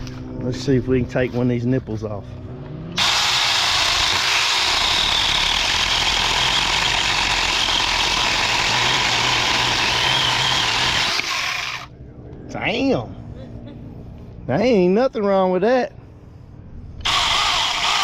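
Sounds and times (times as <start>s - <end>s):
mini chainsaw whirring: 3.0s - 11.9s, 17.0s - 18.0s.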